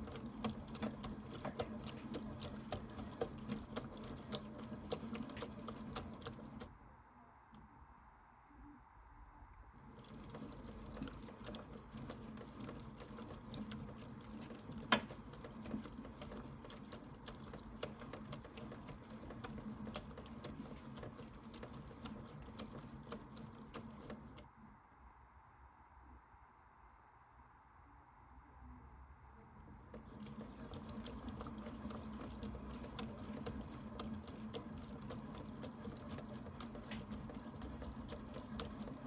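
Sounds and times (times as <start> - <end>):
water trickling and splashing in: 0.0 - 6.6, 9.8 - 24.4, 29.9 - 39.0.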